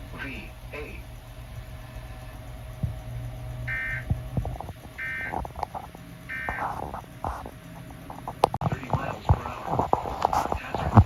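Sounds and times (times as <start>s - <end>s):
digital data tone bursts: 3.4s - 7.2s
clicks and crackle: 3.7s - 11.0s.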